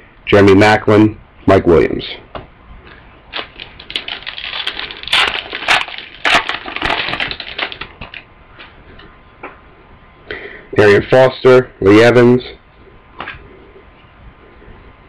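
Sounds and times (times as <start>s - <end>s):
foil wrapper crinkling and tearing: 3.3s - 8.3s.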